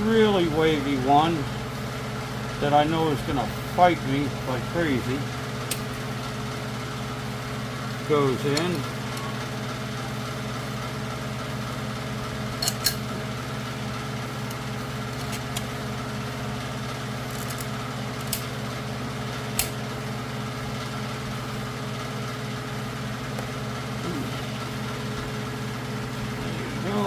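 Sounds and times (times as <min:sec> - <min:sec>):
machine hum: 0:00.0 - 0:27.0
metal parts clicking: 0:12.6 - 0:13.0.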